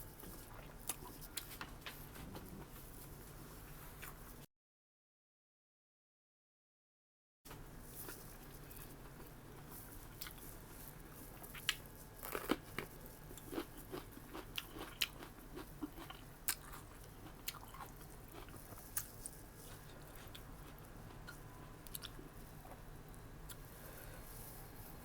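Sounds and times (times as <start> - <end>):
person chewing crunchy food: 0.2 - 2.7, 8.0 - 24.0.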